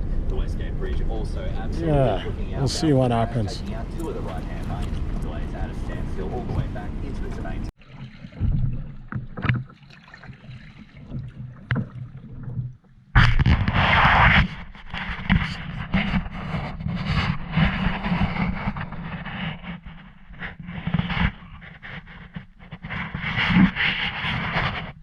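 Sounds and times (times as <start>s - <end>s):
wind buffeting microphone: 0.0s - 7.7s, 13.2s - 25.0s
water sounds: 0.0s - 25.0s
water splashes: 1.2s - 24.6s.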